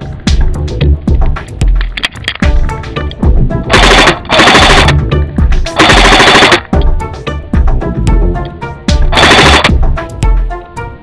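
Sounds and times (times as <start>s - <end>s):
music with heavy drum beat: 0.0s - 11.0s
sharp cracking hits: 3.7s - 6.8s, 9.1s - 9.8s.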